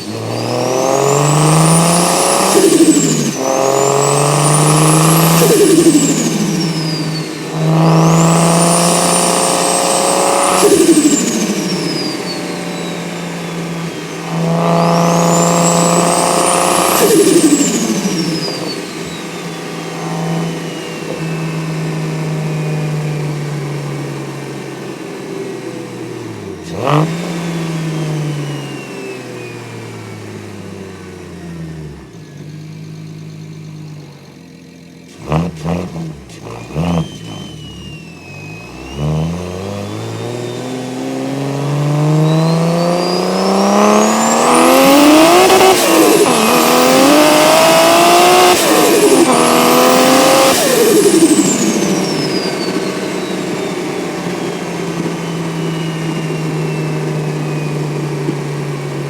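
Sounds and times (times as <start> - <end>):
turbo whistle: 0.0 - 22.0, 35.1 - 58.6
car engine revving: 0.0 - 59.0.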